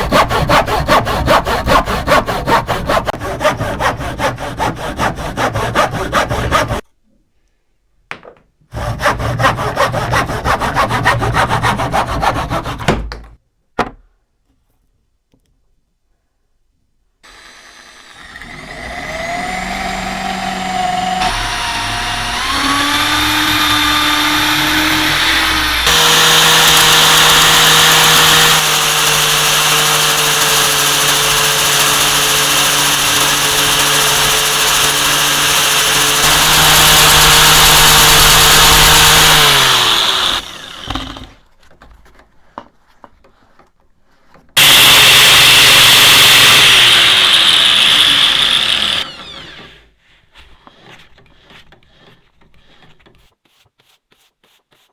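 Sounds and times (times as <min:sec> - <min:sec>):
hand sawing or filing strokes: 0:00.0 - 0:06.8, 0:08.7 - 0:13.1, 0:17.3 - 0:41.4, 0:43.3 - 0:54.9
power tool motor whine: 0:17.3 - 0:41.3, 0:44.6 - 0:49.9.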